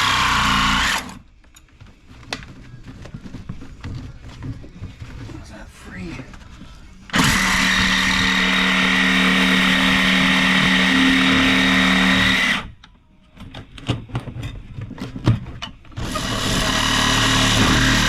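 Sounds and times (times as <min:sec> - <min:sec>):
power cutting tool cutting steel wire: 0:00.0 - 0:01.2, 0:07.1 - 0:12.7, 0:16.0 - 0:18.0.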